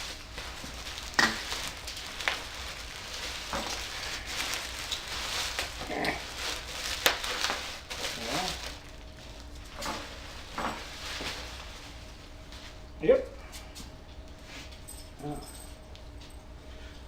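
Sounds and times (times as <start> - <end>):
packing rustling: 0.0 - 12.4.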